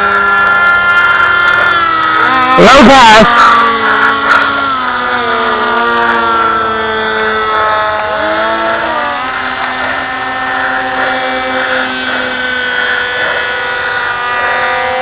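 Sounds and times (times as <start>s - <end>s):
model airplane motor whining: 0.0s - 15.0s.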